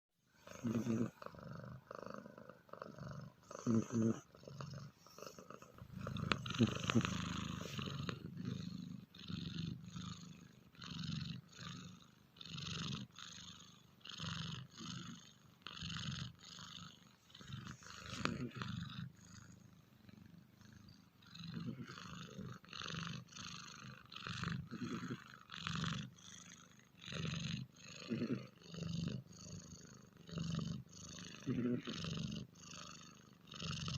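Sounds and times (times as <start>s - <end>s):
cat snoring: 0.3s - 33.9s.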